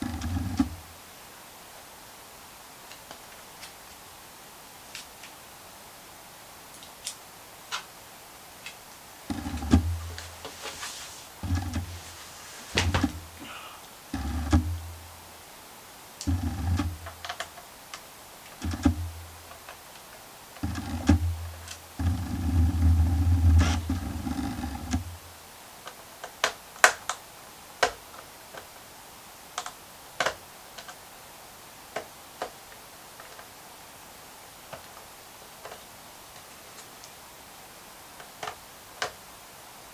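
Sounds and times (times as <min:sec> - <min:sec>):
low rumbling handling noise: 0:09.3 - 0:15.2.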